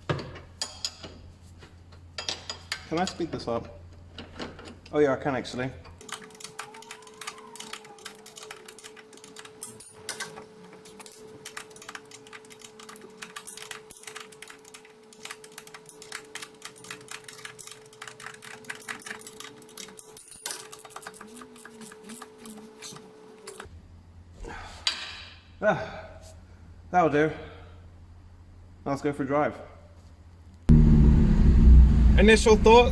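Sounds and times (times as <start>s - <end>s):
hand ratchet clicking: 6.0s - 9.8s.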